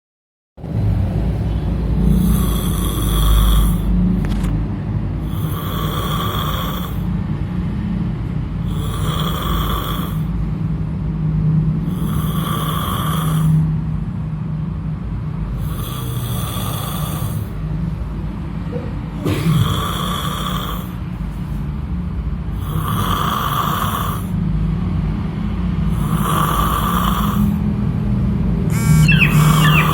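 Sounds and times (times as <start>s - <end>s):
person snoring loudly: 2.1s - 3.9s, 5.2s - 7.0s, 8.7s - 10.3s, 11.9s - 13.6s, 15.6s - 17.5s, 19.3s - 20.9s, 22.6s - 24.3s, 25.9s - 27.5s.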